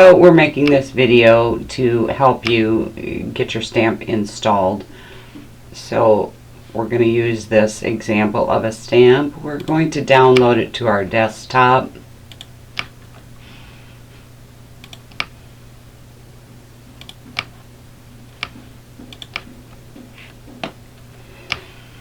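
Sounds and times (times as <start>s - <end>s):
low steady hum: 0.0s - 22.0s
computer mouse clicks: 12.3s - 13.0s, 14.8s - 15.4s, 17.0s - 17.6s, 18.4s - 19.5s, 21.4s - 21.7s.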